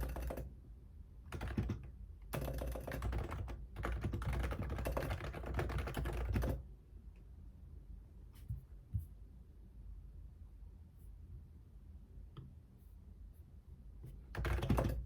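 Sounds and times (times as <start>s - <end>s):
typing on computer keyboard: 0.0s - 0.5s, 1.3s - 6.6s, 14.3s - 15.0s.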